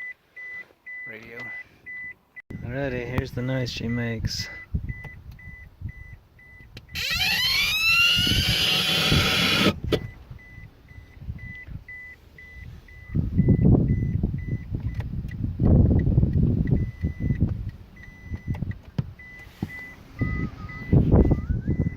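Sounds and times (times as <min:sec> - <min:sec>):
short high beeps: 0:19.2 - 0:21.9
siren-like rising sweep: 0:19.8 - 0:21.8.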